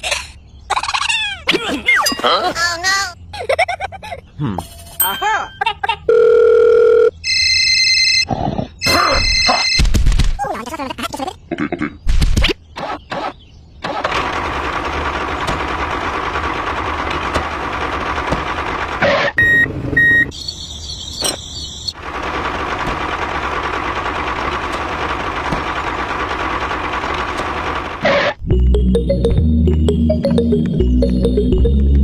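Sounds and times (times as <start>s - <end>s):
electronic chirping: 28.4s - 32.0s.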